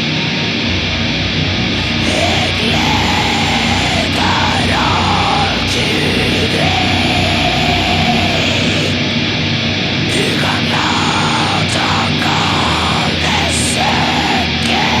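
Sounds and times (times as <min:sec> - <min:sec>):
distorted guitars and drums: 0:01.3 - 0:09.0
harsh shrieked vocals: 0:01.3 - 0:09.2, 0:10.0 - 0:15.0.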